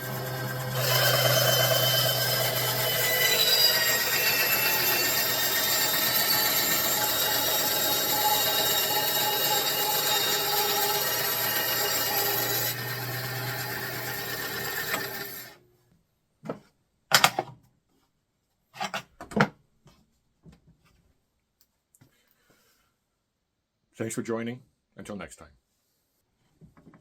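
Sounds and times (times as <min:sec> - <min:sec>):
bandsaw cutting wood: 0:00.0 - 0:15.6.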